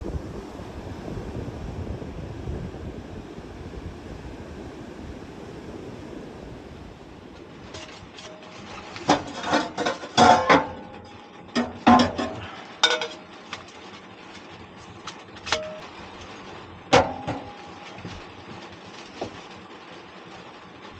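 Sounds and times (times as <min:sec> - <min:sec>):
rain: 0:00.0 - 0:20.9
sea: 0:00.0 - 0:20.9
metal objects clinking: 0:11.6 - 0:13.3.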